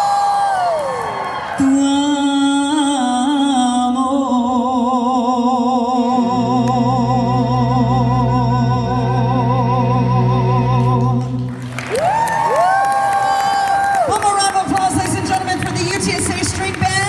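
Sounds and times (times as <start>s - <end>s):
string band playing: 6.5s - 11.9s.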